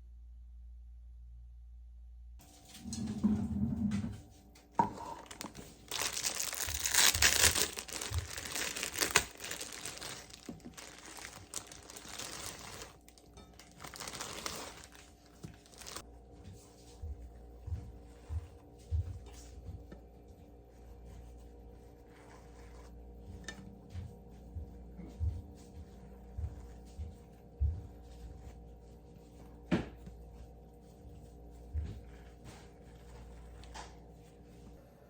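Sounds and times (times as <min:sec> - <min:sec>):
rustling and crinkling: 0:02.5 - 0:34.8.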